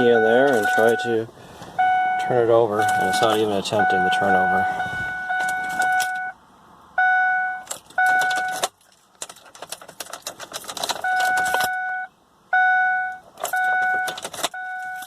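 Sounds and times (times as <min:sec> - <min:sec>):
dashboard warning chime: 0:00.0 - 0:01.2, 0:01.8 - 0:06.4, 0:07.0 - 0:08.6, 0:11.0 - 0:15.0
ignition key clicking: 0:07.6 - 0:11.8, 0:13.4 - 0:15.0
keys jangling: 0:07.7 - 0:11.8, 0:13.4 - 0:15.0.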